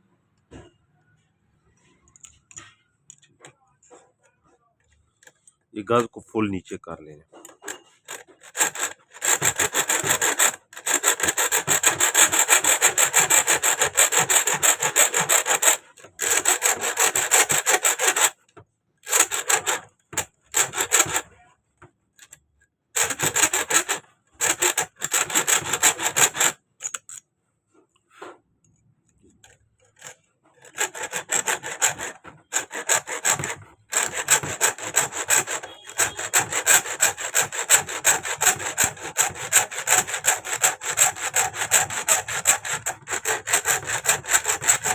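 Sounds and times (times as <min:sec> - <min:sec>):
hacksaw sawing through metal: 0:05.2 - 0:06.1, 0:07.1 - 0:21.4, 0:23.0 - 0:27.2, 0:29.2 - 0:44.9.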